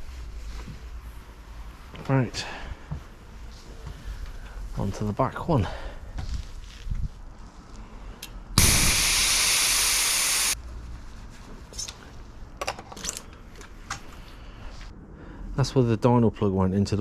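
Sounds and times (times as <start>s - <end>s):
air hissing from tyre valve: 8.6s - 10.6s.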